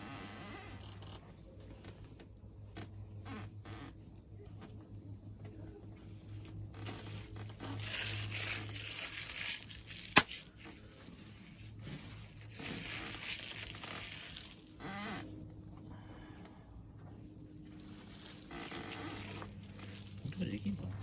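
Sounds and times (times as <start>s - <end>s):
crinkling rustling noise: 4.5s - 15.9s, 17.0s - 21.0s.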